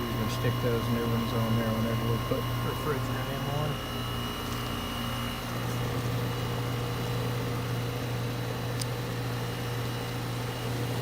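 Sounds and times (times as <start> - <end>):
air conditioner unit humming: 0.0 - 11.0.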